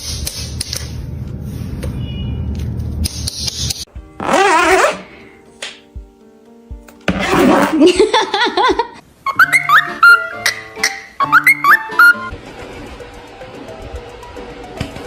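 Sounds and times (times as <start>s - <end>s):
background music: 3.8s - 15.0s
loud warbling call: 9.3s - 10.6s, 11.2s - 12.3s.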